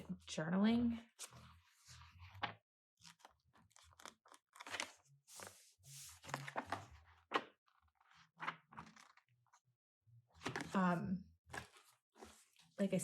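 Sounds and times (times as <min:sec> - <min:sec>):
paper and plastic crinkling: 0:03.1 - 0:09.2, 0:11.5 - 0:12.8.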